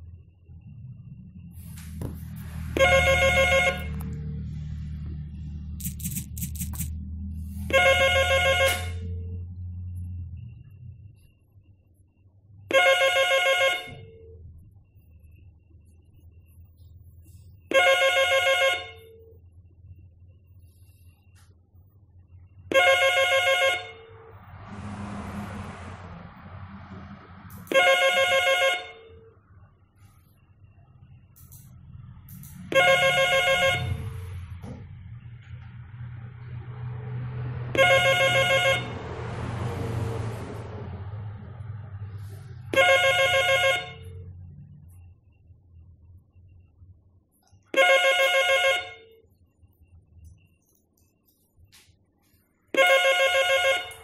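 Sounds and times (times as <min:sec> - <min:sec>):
steady low hum: 0:00.0 - 0:28.2.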